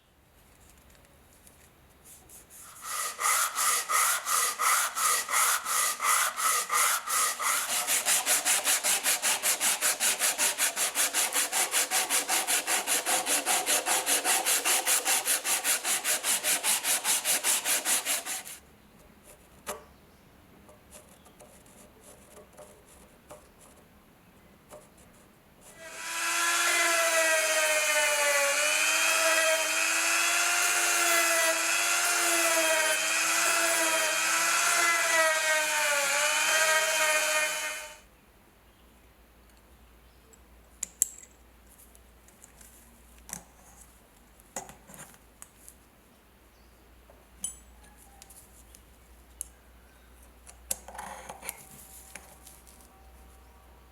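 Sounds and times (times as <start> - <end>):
hand tool rasping strokes: 2.6 - 18.6, 25.7 - 38.0
electric power tool whining: 25.8 - 38.0.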